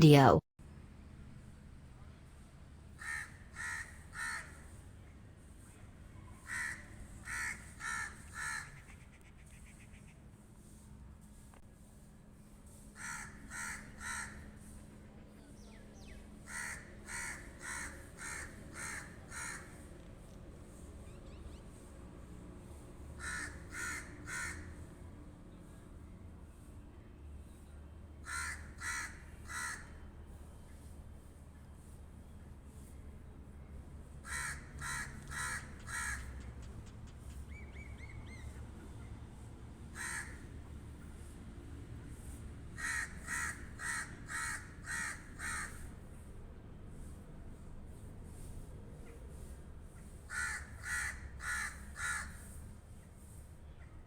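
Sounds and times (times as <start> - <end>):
crow cawing: 3.0 - 4.5, 6.4 - 8.7, 13.0 - 14.4, 16.5 - 19.7, 23.2 - 24.7, 28.2 - 29.9, 34.2 - 36.4, 40.0 - 40.4, 42.8 - 45.8, 50.3 - 52.4.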